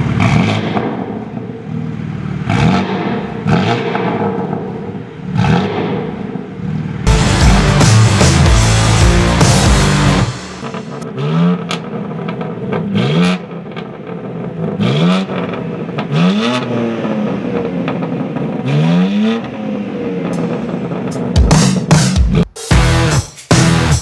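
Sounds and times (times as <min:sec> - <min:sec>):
car engine revving: 0:00.0 - 0:21.4.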